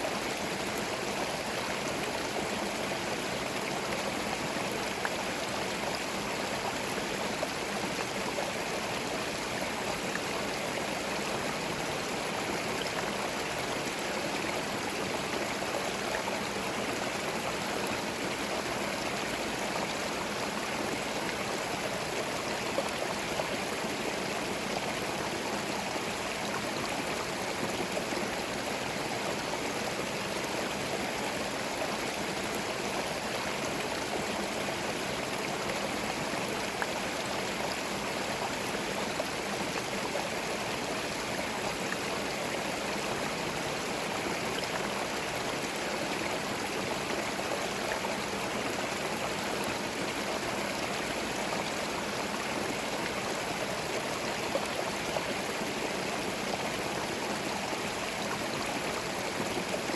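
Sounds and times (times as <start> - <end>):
stream running over stones: 0.0 - 59.9.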